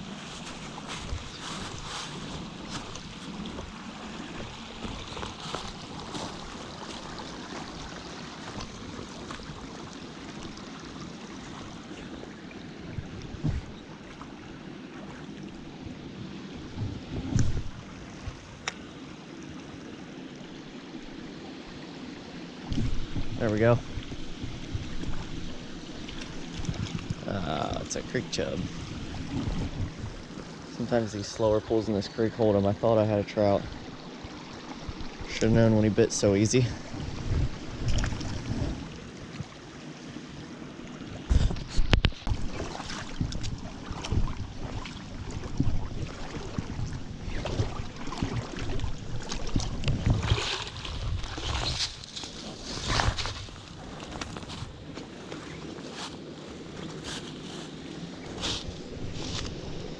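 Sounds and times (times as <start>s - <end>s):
wind buffeting microphone: 0.0s - 9.6s, 12.8s - 13.9s, 16.6s - 18.6s, 22.7s - 31.6s, 33.6s - 39.1s, 41.2s - 54.9s, 56.7s - 59.9s
creek water running: 0.0s - 59.9s.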